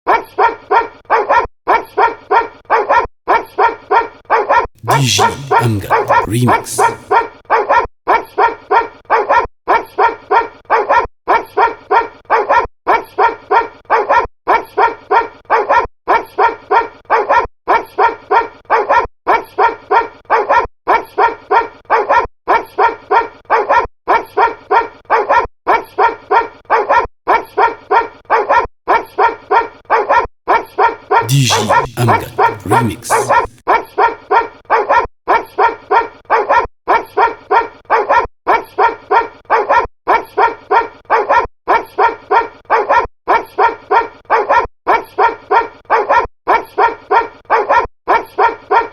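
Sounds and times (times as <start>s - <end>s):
dog barks in rhythmic loop: 31.2s - 33.6s.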